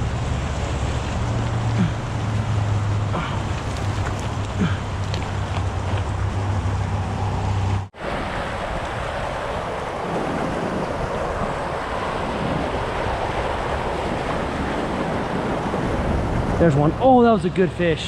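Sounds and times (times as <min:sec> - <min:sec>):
creek water rushing: 0:00.0 - 0:18.0
wind buffeting microphone: 0:02.9 - 0:17.3.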